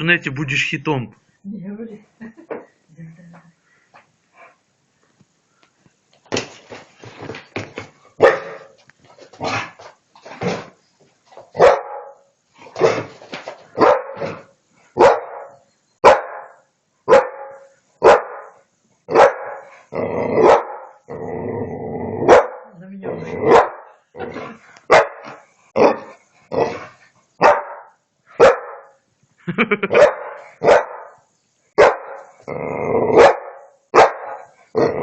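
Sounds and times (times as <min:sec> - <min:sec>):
dog barking sharply: 0:08.2 - 0:08.7, 0:11.6 - 0:12.2, 0:13.8 - 0:14.4, 0:15.0 - 0:19.7, 0:20.4 - 0:20.9, 0:22.3 - 0:22.6, 0:23.5 - 0:23.8, 0:24.9 - 0:26.1, 0:27.4 - 0:28.9, 0:29.9 - 0:31.2, 0:31.8 - 0:32.3, 0:33.2 - 0:34.5.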